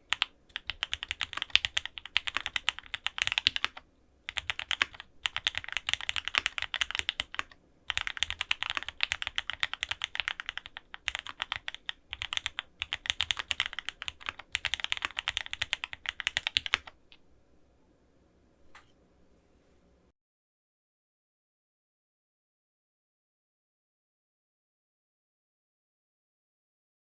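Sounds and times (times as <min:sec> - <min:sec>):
fast mechanical keyboard typing: 0:00.0 - 0:17.1.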